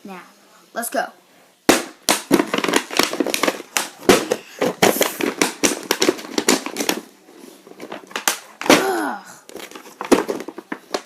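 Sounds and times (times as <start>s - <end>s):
box being smashed open: 1.7s - 7.2s, 7.8s - 11.0s.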